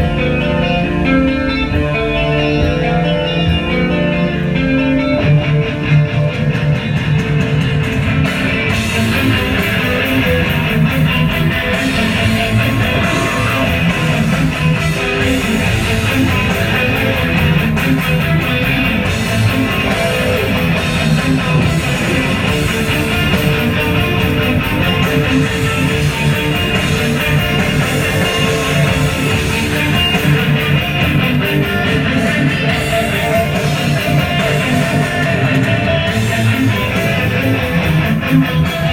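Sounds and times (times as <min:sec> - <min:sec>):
bass guitar: 0:00.0 - 0:38.9
strummed electric guitar: 0:00.0 - 0:38.9.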